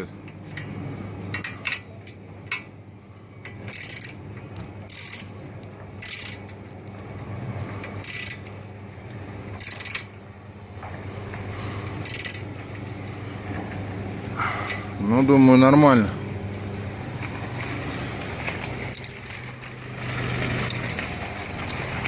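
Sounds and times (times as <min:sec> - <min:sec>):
ratchet wrench clicking: 0:03.7 - 0:04.2, 0:04.9 - 0:05.3, 0:06.0 - 0:06.8, 0:08.0 - 0:08.6, 0:09.6 - 0:10.2, 0:12.0 - 0:12.6.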